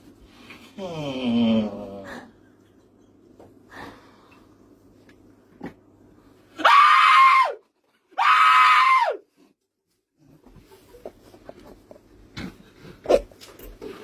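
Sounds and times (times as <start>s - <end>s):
person screaming: 6.6s - 7.6s, 8.2s - 9.2s.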